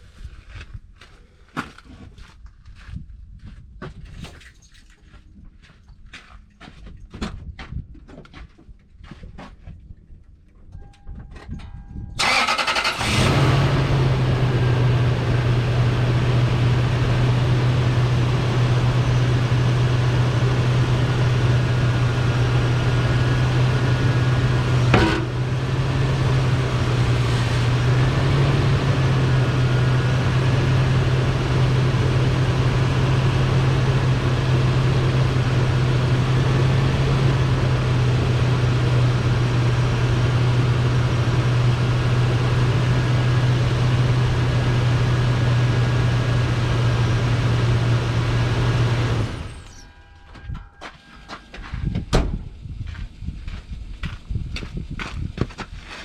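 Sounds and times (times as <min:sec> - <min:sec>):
vehicle engine humming: 0:11.0 - 0:54.5
sharp clunk: 0:24.9 - 0:25.4.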